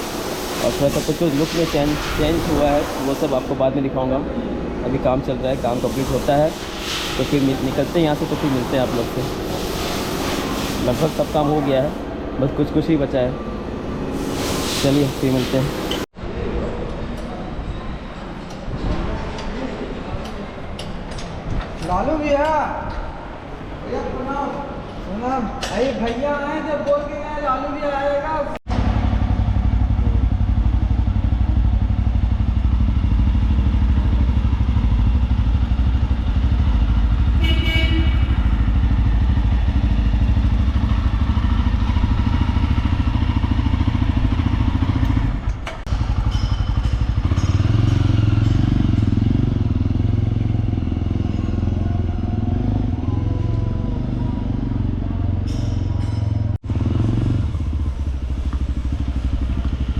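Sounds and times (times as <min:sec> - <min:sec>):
motorcycle engine running: 0:28.7 - 0:59.9.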